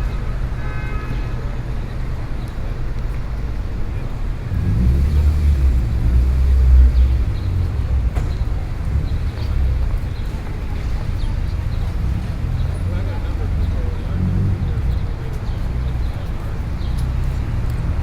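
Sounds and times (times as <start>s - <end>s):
traffic rumble: 0.0s - 18.0s
heavy vehicle passing: 3.2s - 18.0s.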